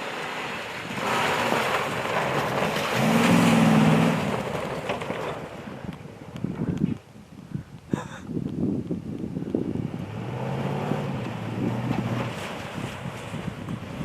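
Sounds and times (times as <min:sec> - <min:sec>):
tyres rushing through snow: 0:00.0 - 0:06.4, 0:09.6 - 0:14.0.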